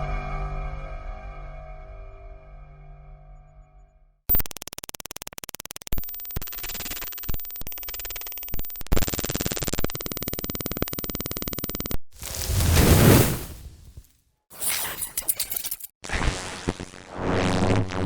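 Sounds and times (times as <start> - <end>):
buzzing digital glitch stutter: 4.3 - 12.0, 14.6 - 18.0.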